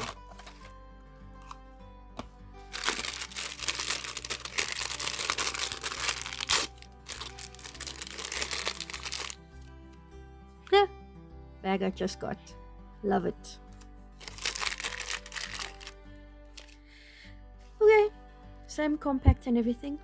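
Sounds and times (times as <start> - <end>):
packaging crinkling and rustling: 0.0 - 0.7, 2.7 - 9.4, 14.2 - 16.0, 16.6 - 16.8.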